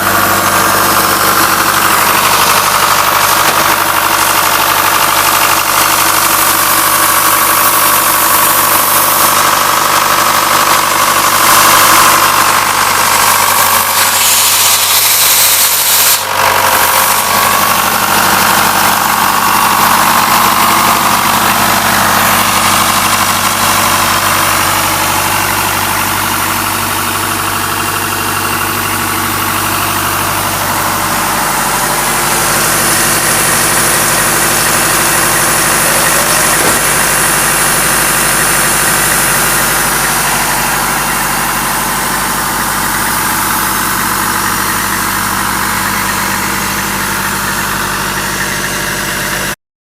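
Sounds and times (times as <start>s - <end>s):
air compressor diesel engine running: 0.0s - 49.6s.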